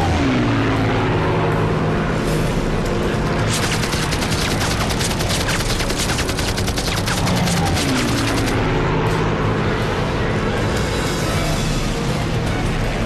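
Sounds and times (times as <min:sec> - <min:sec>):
rapid gunfire: 0:03.5 - 0:08.6.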